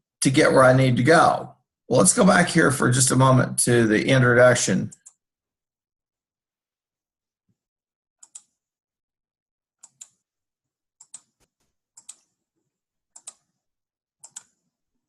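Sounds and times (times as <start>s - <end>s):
computer mouse clicks: 8.2s - 8.6s, 9.8s - 10.2s, 11.0s - 12.4s, 13.1s - 13.6s, 14.2s - 14.6s.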